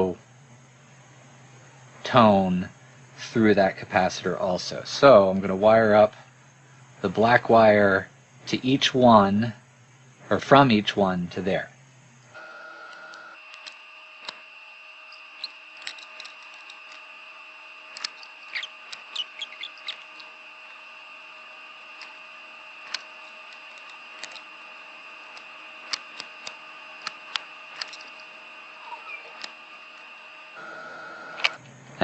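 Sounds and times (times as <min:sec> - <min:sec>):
high-pitched electrical whine: 0:00.0 - 0:32.0
squeaky crackles: 0:12.8 - 0:24.7, 0:25.3 - 0:30.1
small clicks: 0:12.8 - 0:30.2, 0:31.4 - 0:31.7.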